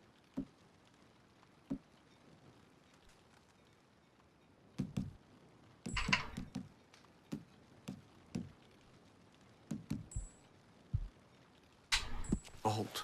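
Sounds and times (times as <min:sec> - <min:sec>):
dull knocks and thumps: 0:04.8 - 0:05.2, 0:09.6 - 0:10.3, 0:11.0 - 0:11.2.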